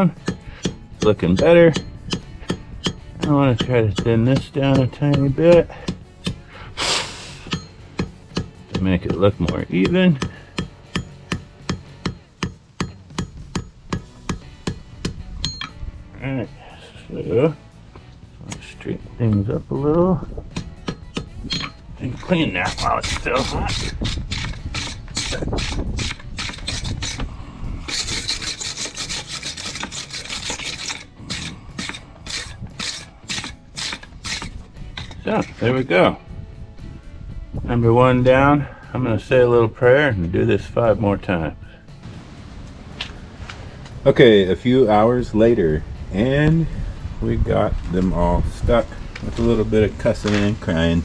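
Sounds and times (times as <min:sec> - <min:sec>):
hammer striking hot steel: 0:00.0 - 0:06.4, 0:07.4 - 0:15.8, 0:20.5 - 0:27.3, 0:27.9 - 0:35.7
metallic ring: 0:07.5 - 0:08.6, 0:10.6 - 0:14.8, 0:15.4 - 0:15.8, 0:20.8 - 0:23.2.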